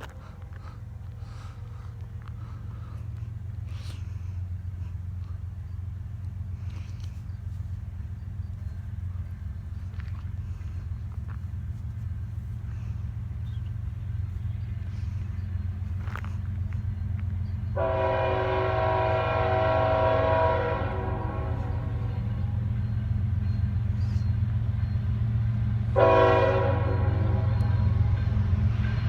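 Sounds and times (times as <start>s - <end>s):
train air horn blasts: 17.8s - 22.6s, 25.9s - 28.3s.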